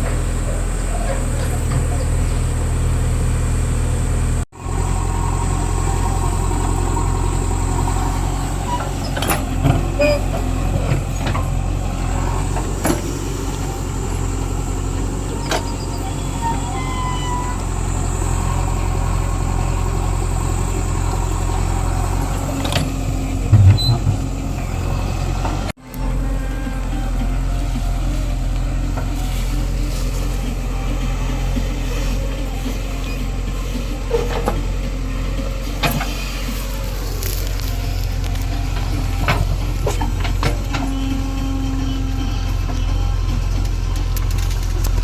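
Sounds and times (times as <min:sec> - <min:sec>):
diesel engine running: 0:00.0 - 0:45.0.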